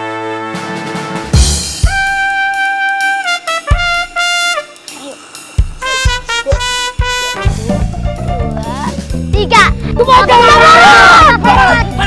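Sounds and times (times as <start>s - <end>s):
brass tune: 0.0s - 8.4s.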